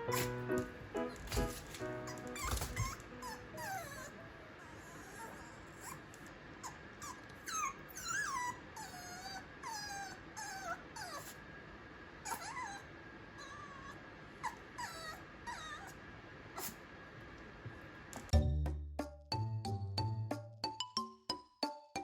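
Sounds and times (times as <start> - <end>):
puppy whimpering: 0.0 - 0.4, 1.3 - 6.0, 6.6 - 11.4, 12.2 - 16.0.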